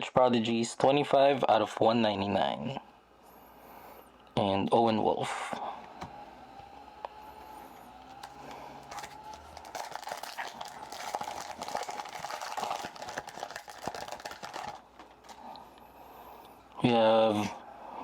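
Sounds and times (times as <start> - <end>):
foil wrapper tearing and crinkling: 8.1 - 14.9.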